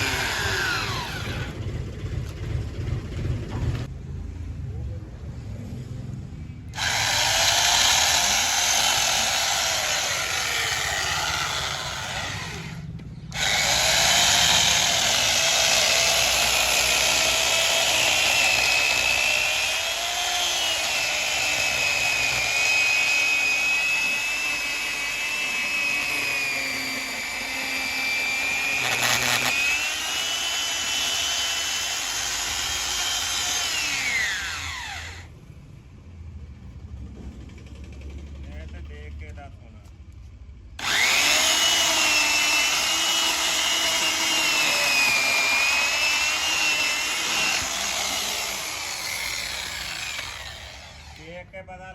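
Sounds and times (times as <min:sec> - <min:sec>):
power tool cutting wood: 0:00.0 - 0:01.6, 0:06.8 - 0:35.3, 0:40.8 - 0:51.3.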